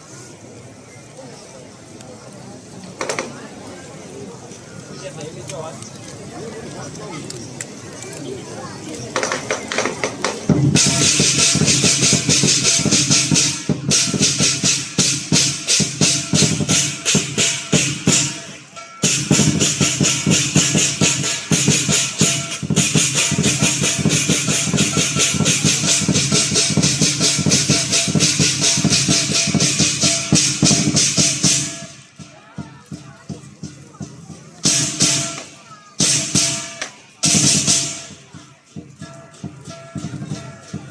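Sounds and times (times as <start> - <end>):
big drum struck rapidly: 9.1 - 40.9
crashing cymbals: 10.5 - 32.4, 33.6 - 40.9.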